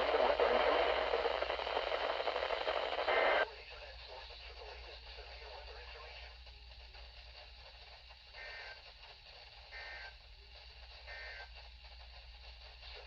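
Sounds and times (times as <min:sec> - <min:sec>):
faint radio receiver hiss: 0:00.0 - 0:13.0.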